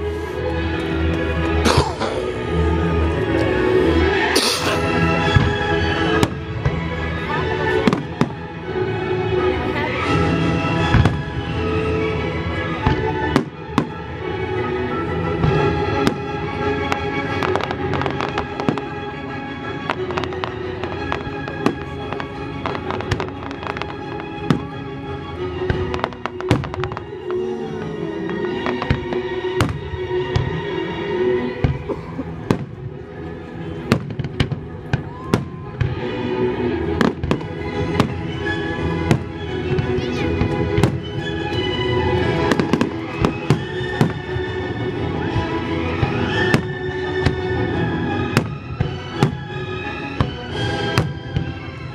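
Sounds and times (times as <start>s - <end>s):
orchestral music: 0.0s - 51.9s
fireworks bangs and crackles: 4.0s - 30.7s, 31.5s - 51.9s
fireworks bursting: 19.7s - 24.8s, 25.6s - 30.6s.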